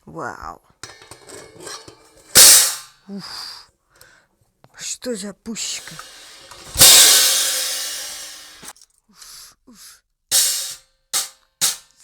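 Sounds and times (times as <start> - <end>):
crash cymbal ringing: 5.8 - 8.7
short bright cymbal hits: 5.8 - 8.7.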